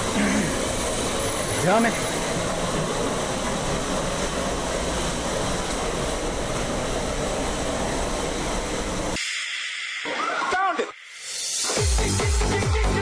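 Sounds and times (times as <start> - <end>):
loud rushing mechanical noise: 0.0 - 10.1.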